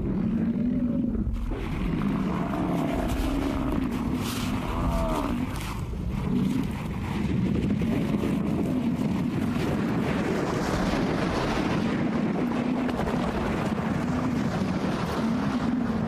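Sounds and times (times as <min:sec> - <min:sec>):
bison bellowing: 0:00.0 - 0:06.8
rushing noise: 0:01.2 - 0:13.5.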